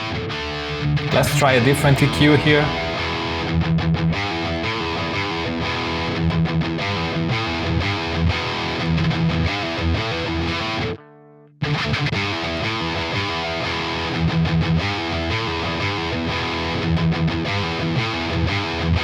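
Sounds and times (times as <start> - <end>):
distorted electric guitar riff: 1.1 - 3.5.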